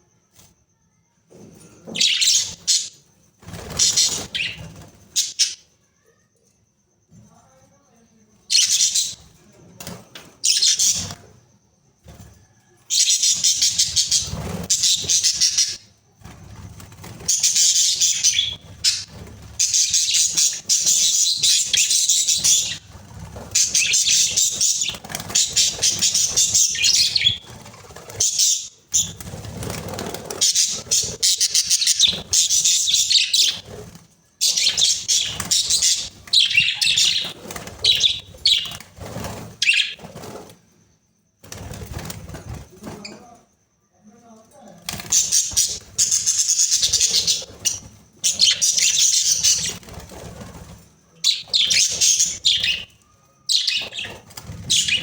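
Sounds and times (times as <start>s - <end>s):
budgerigars chattering and warbling: 17.2s - 27.5s, 34.4s - 38.8s, 45.1s - 49.8s, 51.3s - 52.9s, 53.5s - 55.0s.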